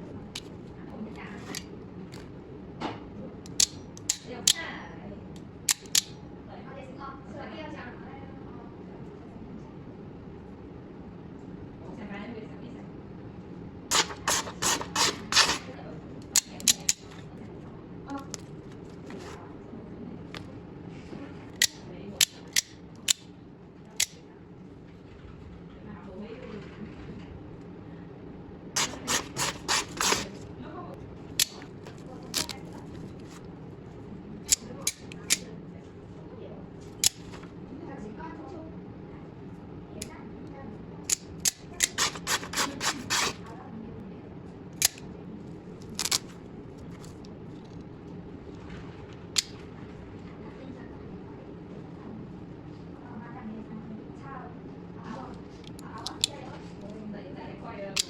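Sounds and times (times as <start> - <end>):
metal hand tool clicks: 5.7 - 6.1
hand tool rasping strokes: 13.9 - 15.7, 28.8 - 30.4, 41.8 - 43.4.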